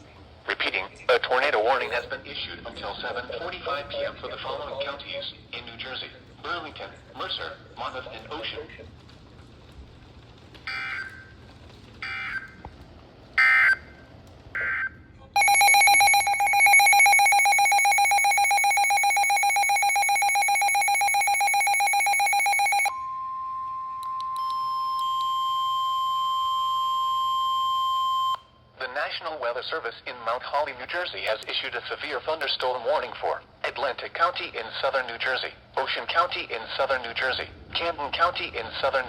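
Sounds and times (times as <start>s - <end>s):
fast-pulsing alarm tone: 10.7s - 11.2s, 14.6s - 24.0s
steady warning alarm tone: 10.7s - 11.4s, 12.0s - 12.6s, 13.4s - 13.9s, 14.6s - 28.6s.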